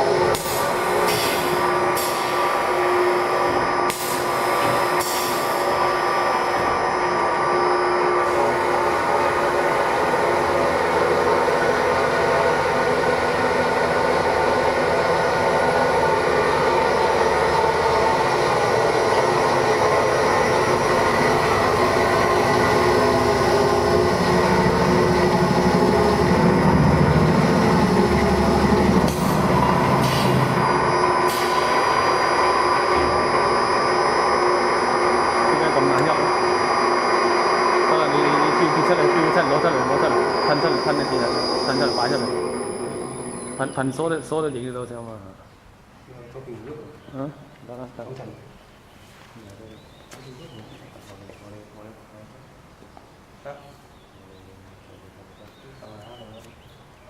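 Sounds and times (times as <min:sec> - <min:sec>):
cutting machine motor hum: 0:16.2 - 0:44.0.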